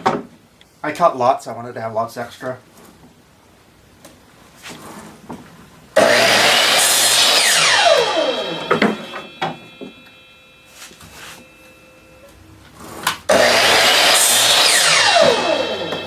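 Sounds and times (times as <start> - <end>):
mitre saw cutting wood: 6.0 - 9.9, 12.8 - 16.0
saw motor spinning down whine: 6.0 - 10.6, 13.3 - 16.0.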